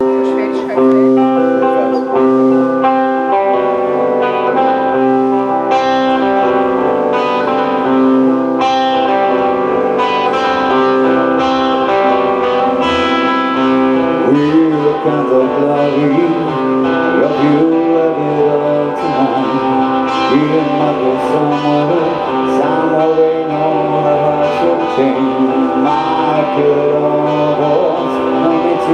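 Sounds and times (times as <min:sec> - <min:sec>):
live band with guitar: 0:00.0 - 0:28.9
person singing: 0:14.2 - 0:28.9.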